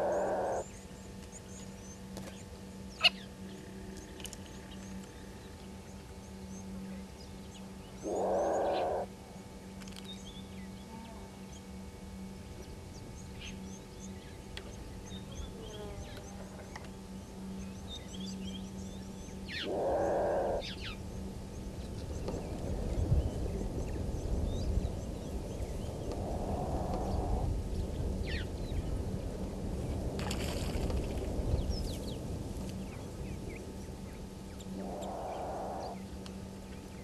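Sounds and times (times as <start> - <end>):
animal call: 0.0 - 0.7, 8.0 - 9.1, 19.5 - 20.9, 34.8 - 36.0
low rumbling noise: 0.0 - 37.0
steady low hum: 0.0 - 37.0
small birds chirping: 6.6 - 9.0, 34.5 - 36.0.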